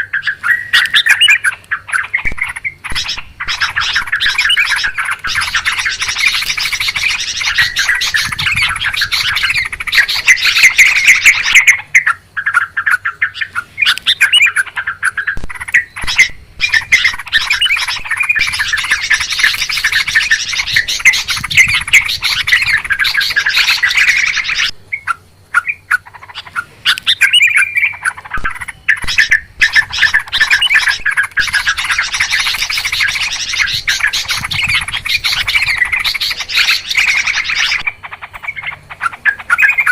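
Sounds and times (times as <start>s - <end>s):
flock of birds chattering: 0.0s - 39.9s.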